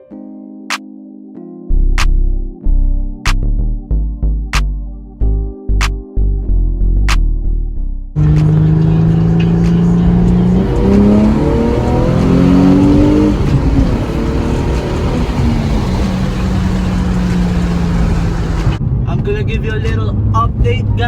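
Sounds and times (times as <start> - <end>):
car engine accelerating: 8.2 - 21.0.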